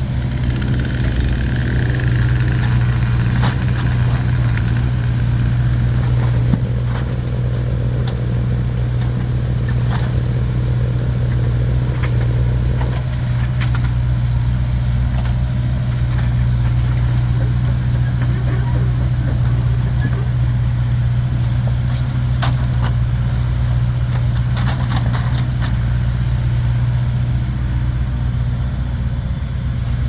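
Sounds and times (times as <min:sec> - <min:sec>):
engine idling: 0:00.0 - 0:30.0.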